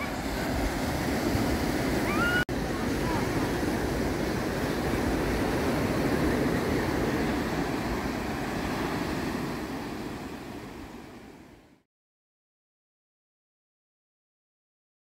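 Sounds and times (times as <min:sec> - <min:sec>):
surf breaking on a beach: 0:00.0 - 0:11.8.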